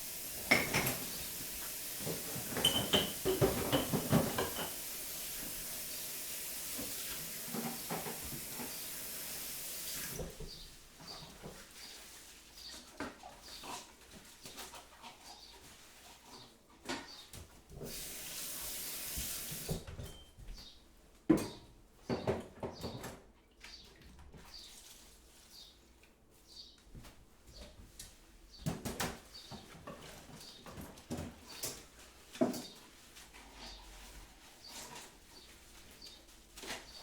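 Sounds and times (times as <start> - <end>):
steady hiss: 0.0 - 10.3
crockery and utensils clinking: 0.3 - 5.0.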